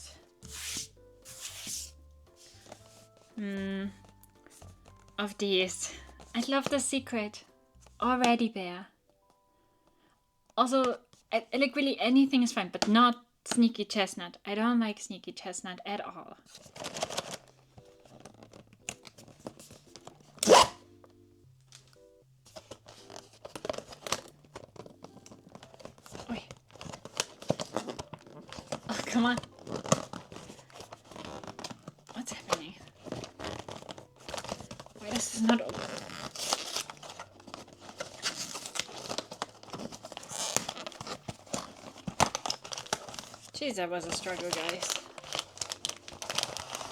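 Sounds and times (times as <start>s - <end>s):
soft background music: 0.0s - 46.9s
packaging crinkling and rustling: 0.4s - 6.8s, 16.4s - 20.9s, 21.6s - 46.9s
packaging ripping: 0.5s - 3.2s, 16.5s - 20.9s, 21.7s - 46.9s.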